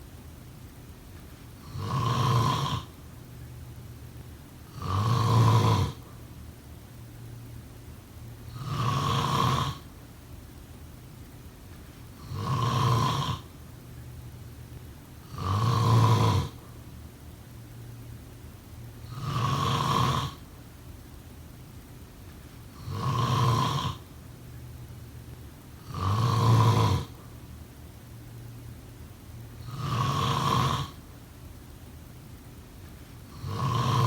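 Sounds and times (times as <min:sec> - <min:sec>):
person snoring: 0:01.6 - 0:03.0, 0:04.7 - 0:06.1, 0:08.5 - 0:09.9, 0:12.2 - 0:13.5, 0:15.2 - 0:16.6, 0:19.0 - 0:20.4, 0:22.8 - 0:24.0, 0:25.8 - 0:27.2, 0:29.6 - 0:31.0, 0:33.3 - 0:34.0.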